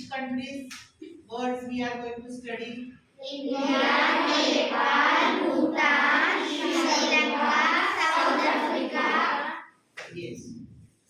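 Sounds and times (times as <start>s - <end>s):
children chanting in chorus: 3.2s - 9.6s.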